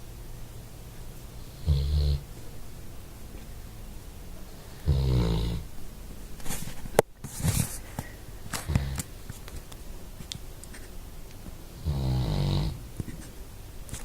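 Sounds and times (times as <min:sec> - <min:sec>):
dog snoring: 0:01.4 - 0:02.3, 0:04.5 - 0:05.8, 0:08.5 - 0:09.2, 0:11.8 - 0:12.9.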